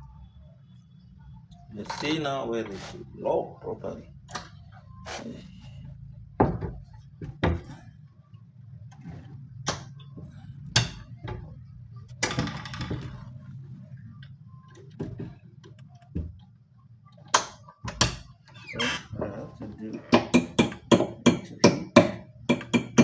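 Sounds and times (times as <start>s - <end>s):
scraping rub: 2.7s - 3.2s
cabinet door and lock knocking: 6.4s - 7.7s.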